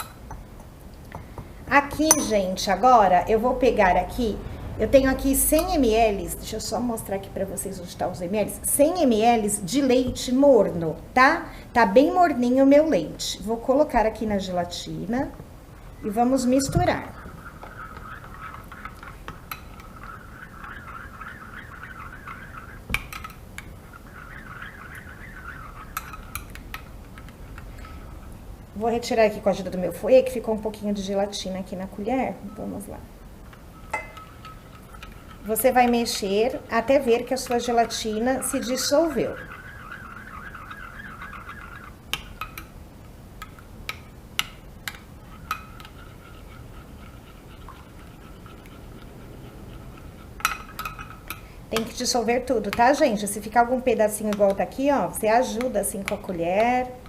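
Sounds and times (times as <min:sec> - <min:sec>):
spoon clinking against bowl: 0:01.9 - 0:02.5, 0:25.8 - 0:26.9, 0:33.7 - 0:35.5
spoon scraping a bowl: 0:01.9 - 0:02.5, 0:16.4 - 0:28.2, 0:33.5 - 0:42.7, 0:43.4 - 0:57.0
faint wavering high whine: 0:31.9 - 0:37.5.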